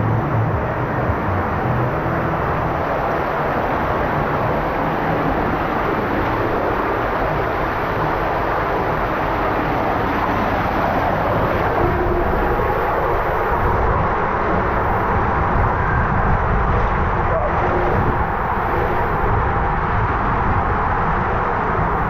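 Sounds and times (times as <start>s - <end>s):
water rushing in slide tube: 2.0s - 22.0s.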